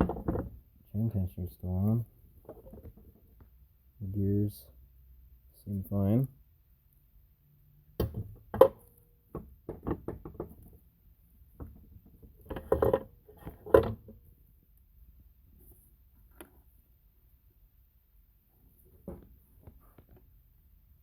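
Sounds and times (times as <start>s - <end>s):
metal parts knocking and clinking: 12.4s - 14.1s.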